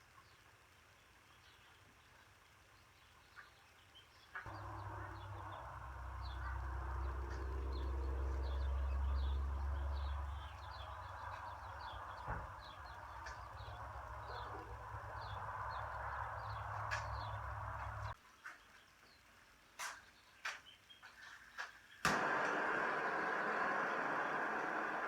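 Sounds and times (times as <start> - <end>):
small birds chirping: 0.0 - 25.0
steady low rumble: 4.5 - 18.2.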